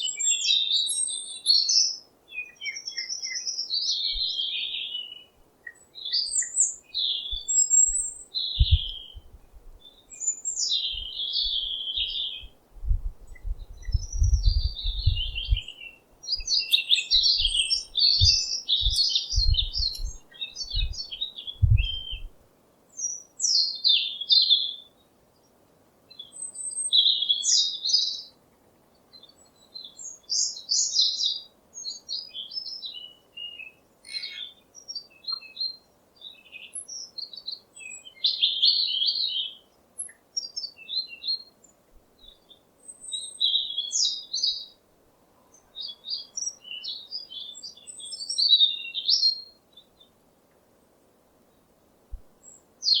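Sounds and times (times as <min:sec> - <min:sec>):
songbirds chirping: 0:00.0 - 0:53.0
low bumps: 0:12.8 - 0:15.7, 0:21.6 - 0:22.3.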